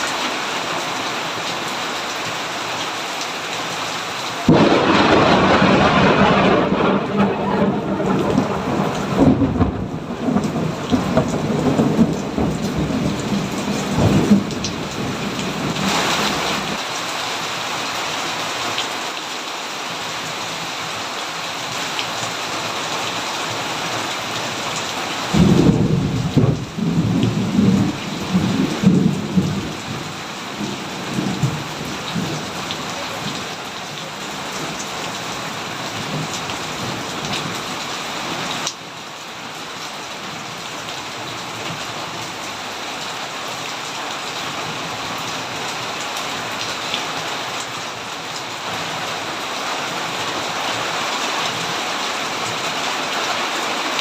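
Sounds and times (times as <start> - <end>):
steady rain: 0.0 - 54.0
thunder clap: 4.5 - 13.2
thunder rumbling: 4.5 - 16.7, 25.3 - 33.4.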